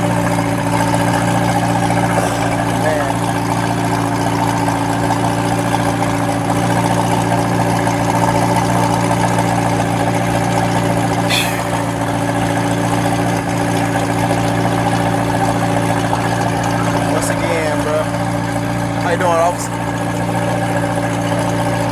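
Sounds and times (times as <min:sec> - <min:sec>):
vehicle engine idling: 0:00.0 - 0:21.9
brief high hiss: 0:11.3 - 0:12.1.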